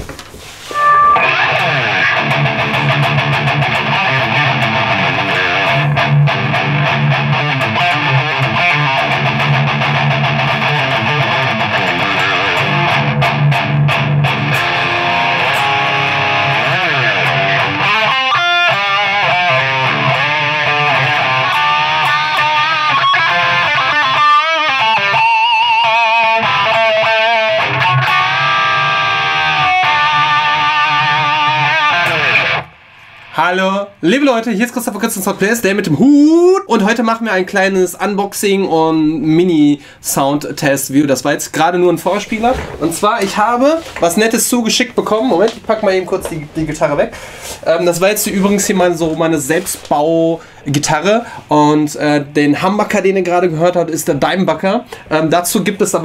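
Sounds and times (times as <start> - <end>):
distorted electric guitar riff: 0.6 - 34.6.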